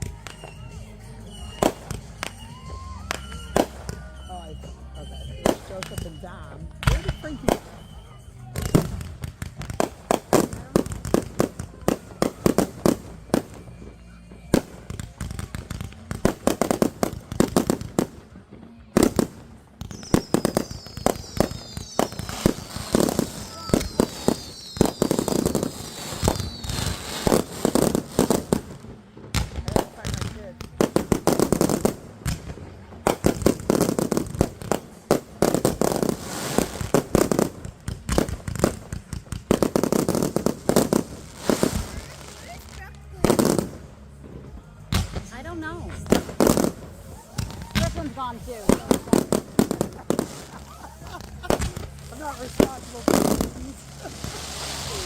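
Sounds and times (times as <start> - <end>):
falling firework whistles: 0.0 - 9.2, 19.8 - 28.6, 35.4 - 37.6, 39.6 - 42.5, 46.4 - 55.0
fireworks bangs and crackles: 0.0 - 55.0.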